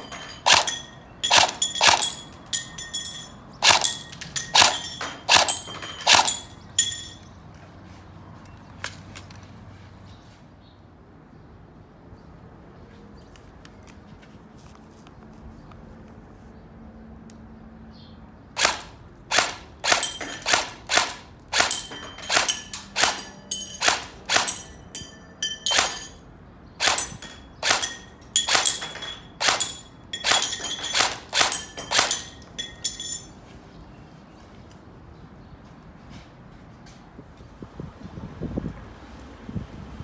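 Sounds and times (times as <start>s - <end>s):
short metallic ring: 0.0s - 7.4s, 21.6s - 33.4s
airsoft rifle shots cracking: 0.4s - 2.2s, 3.6s - 6.5s, 18.6s - 24.8s, 25.6s - 26.2s, 26.8s - 32.4s.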